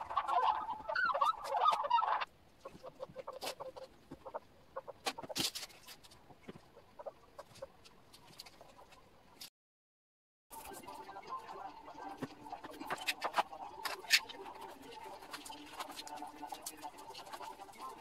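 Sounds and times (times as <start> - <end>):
fowl clucking: 0.0 - 5.3.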